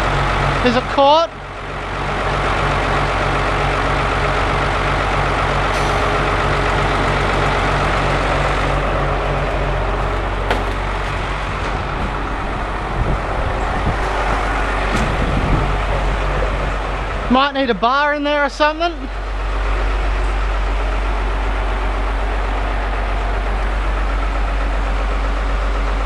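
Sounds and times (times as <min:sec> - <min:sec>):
small knocks and clunks: 0:10.1 - 0:11.8.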